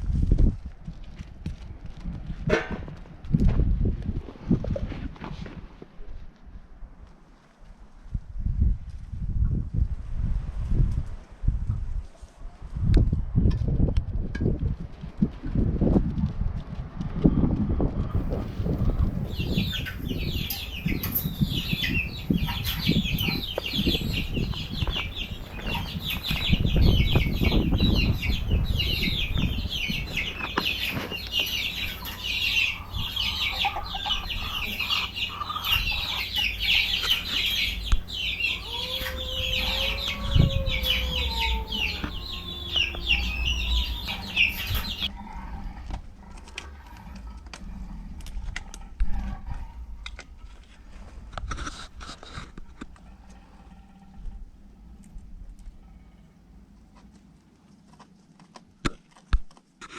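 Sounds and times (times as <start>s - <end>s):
dense high chirping: 18.2s - 45.1s
chickens clucking: 18.2s - 57.4s
bird call falling in pitch: 19.1s - 45.1s.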